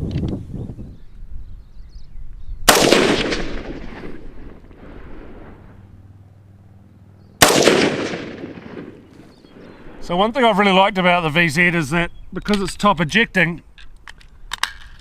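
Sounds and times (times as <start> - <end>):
gunshots with rolling echo: 2.7 - 5.6, 7.4 - 10.1.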